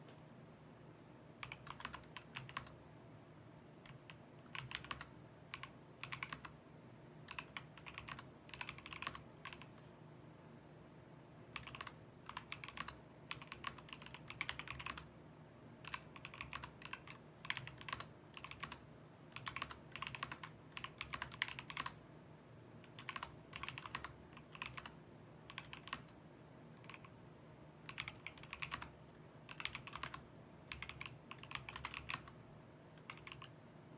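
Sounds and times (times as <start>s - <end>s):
mechanical keyboard typing: 1.4s - 2.8s, 3.8s - 6.6s, 7.2s - 9.8s, 11.5s - 15.1s, 15.8s - 22.0s, 22.8s - 26.2s, 26.8s - 27.2s, 27.8s - 32.4s, 33.0s - 33.6s.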